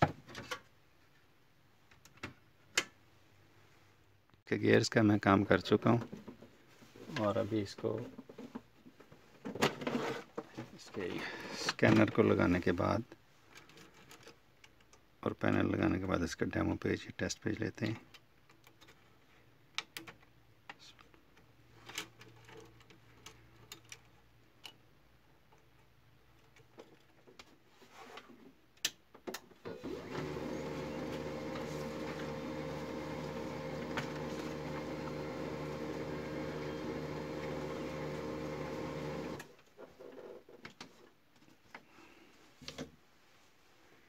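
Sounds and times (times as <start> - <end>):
printer motor and gears humming: 29.7 - 39.4.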